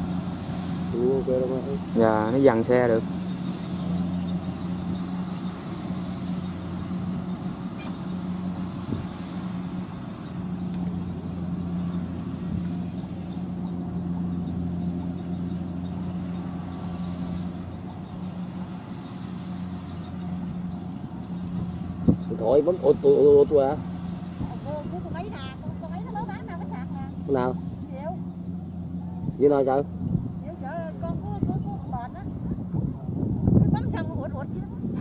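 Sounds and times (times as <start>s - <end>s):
diesel engine running: 0.0s - 35.0s.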